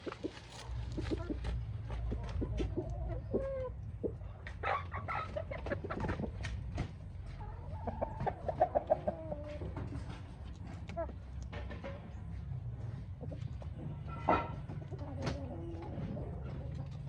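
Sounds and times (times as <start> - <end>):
steady low rumble: 0.0 - 4.6
chickens clucking: 0.0 - 17.0.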